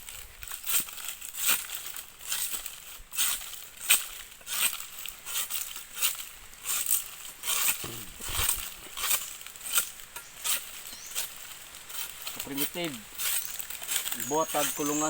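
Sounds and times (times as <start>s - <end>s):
dry plant material crackling: 0.0s - 15.0s.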